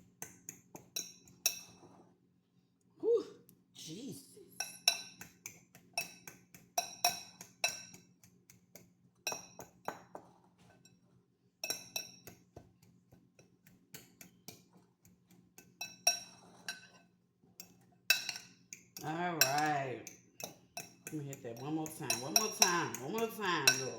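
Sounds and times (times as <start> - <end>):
utensil mashing food in bowl: 0.0 - 1.9, 4.6 - 10.9, 11.6 - 23.9.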